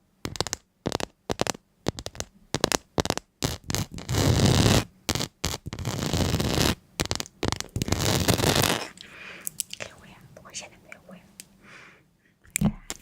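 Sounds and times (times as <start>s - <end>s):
rough scratching: 0.3s - 9.0s.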